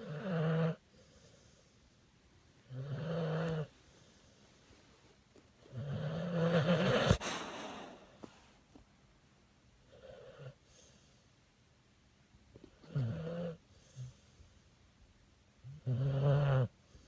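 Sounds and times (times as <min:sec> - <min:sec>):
dog snoring: 0:00.0 - 0:01.7, 0:02.6 - 0:04.1, 0:05.7 - 0:08.0, 0:09.9 - 0:11.1, 0:12.7 - 0:14.4, 0:15.6 - 0:16.8.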